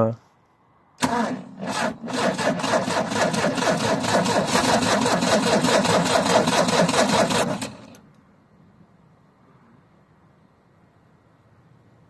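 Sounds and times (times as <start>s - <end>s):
engine cranking on starter: 1.0s - 8.0s.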